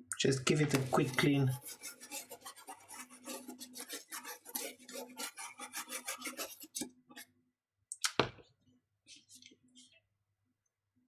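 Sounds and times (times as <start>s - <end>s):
scratchy scrubbing strokes: 0.8s - 7.3s.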